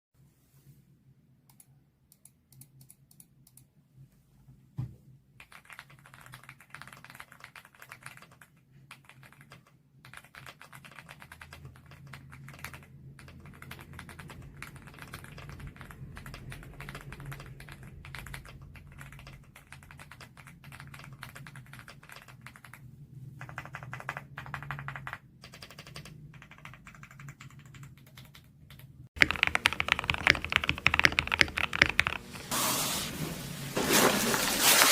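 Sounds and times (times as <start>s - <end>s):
mechanical keyboard typing: 5.4s - 22.8s, 23.4s - 32.4s.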